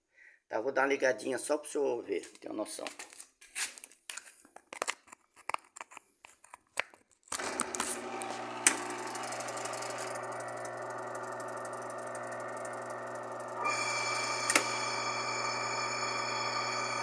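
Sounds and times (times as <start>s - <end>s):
electric motor humming: 7.4s - 17.0s.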